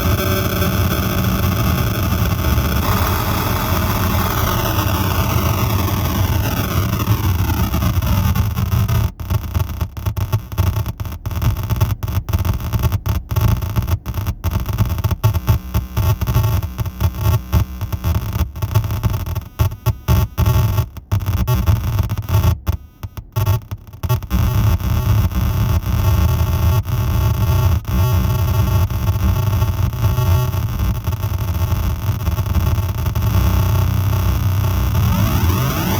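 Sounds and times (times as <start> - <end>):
low buzzing drone: 0.0 - 8.6
harsh electronic synth noise: 0.0 - 8.9, 33.3 - 35.9.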